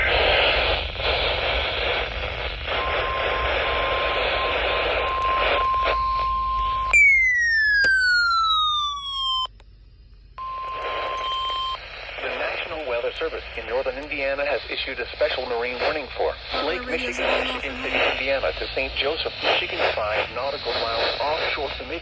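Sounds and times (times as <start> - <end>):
loud radio static: 0.0 - 6.0, 11.9 - 22.0.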